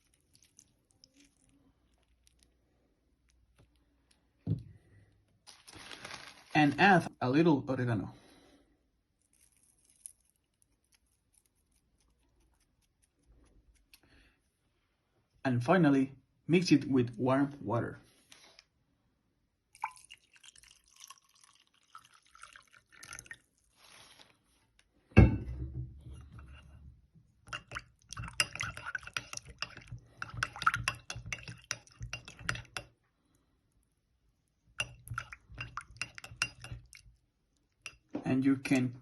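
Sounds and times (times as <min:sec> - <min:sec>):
water pouring into a mug: 0:19.7 - 0:23.8
spoon clinking against a mug: 0:27.5 - 0:32.9, 0:34.8 - 0:37.1.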